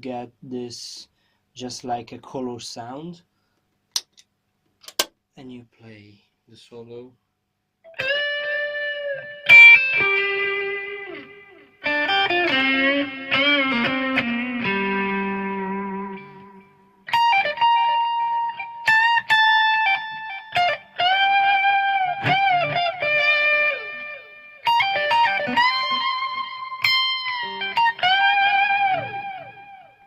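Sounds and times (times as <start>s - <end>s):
electric guitar lead solo: 7.9s - 30.0s.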